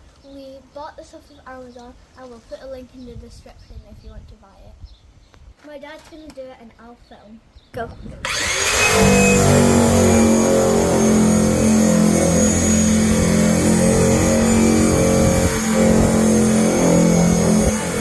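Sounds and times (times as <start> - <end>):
drum sander motor whining: 8.2 - 18.0.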